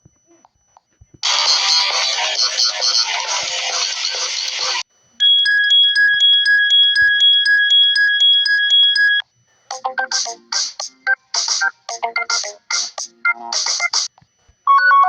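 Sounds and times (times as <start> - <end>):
high electronic ringing beeps: 1.2 - 9.2, 14.7 - 15.0
musical phone ringtone: 4.7 - 14.1
melodic ringtone: 5.2 - 14.0.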